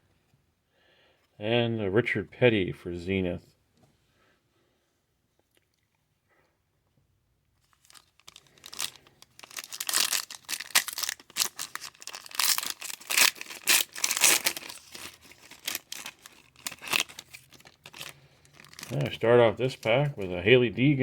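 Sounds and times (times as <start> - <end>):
wrapper crinkling and tearing: 7.6 - 20.5.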